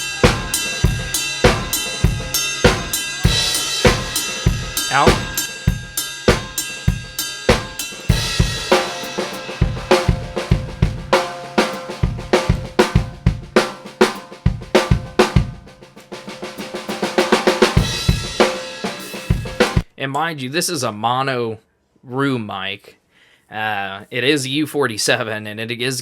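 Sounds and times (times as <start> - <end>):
drum kit playing groove: 0.0 - 19.8.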